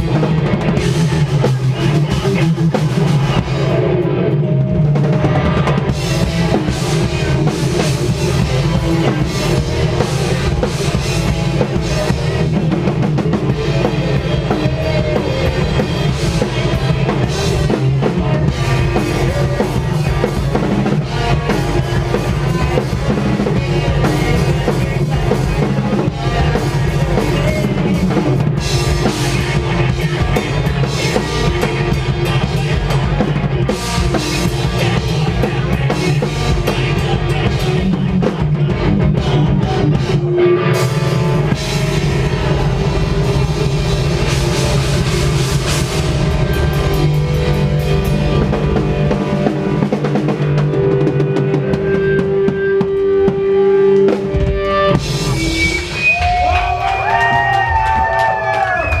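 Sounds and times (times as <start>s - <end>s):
metal band playing live: 0.0s - 59.0s.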